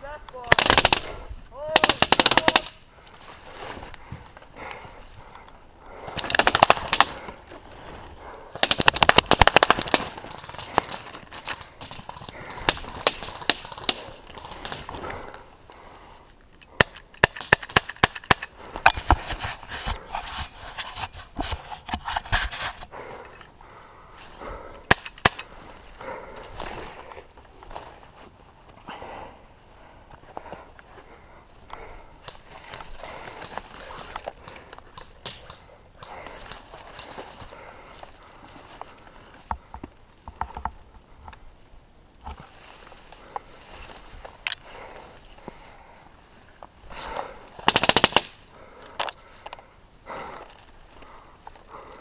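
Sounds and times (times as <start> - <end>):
airsoft guns firing: 0.4 - 2.8, 6.1 - 7.2, 8.6 - 11.0, 11.8 - 14.9, 16.8 - 18.5, 24.9 - 25.5, 47.6 - 48.4.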